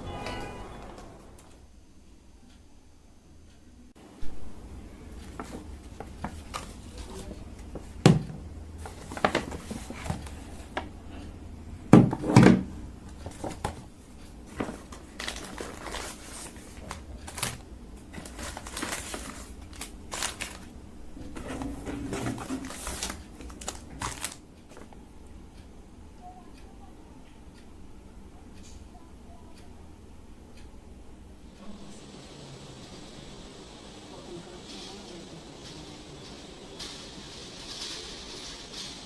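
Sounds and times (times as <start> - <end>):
crinkling and rustling of handling: 5.1 - 11.3, 11.9 - 25.0.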